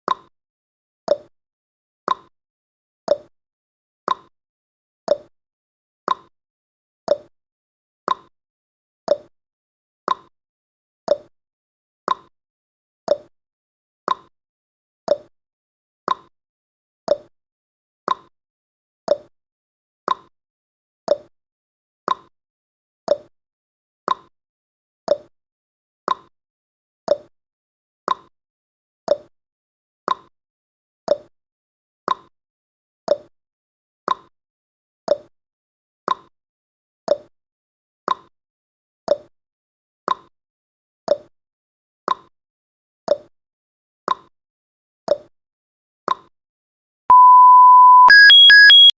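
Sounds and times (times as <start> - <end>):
timer ticking: 47.1 - 48.9.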